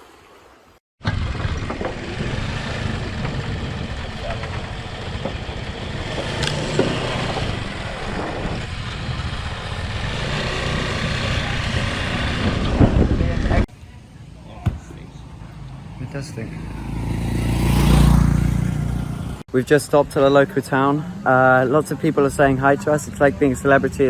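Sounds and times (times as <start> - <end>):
road and wind noise: 1.0 - 24.0
vehicle engine running: 1.1 - 13.1, 14.7 - 19.4.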